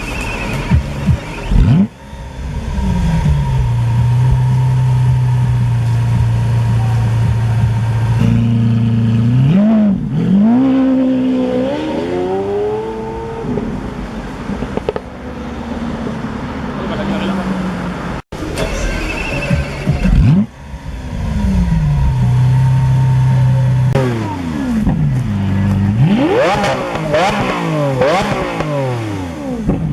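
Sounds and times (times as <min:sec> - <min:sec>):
car engine idling: 0:00.0 - 0:10.6, 0:16.8 - 0:28.2
car engine starting and revving: 0:00.0 - 0:29.9.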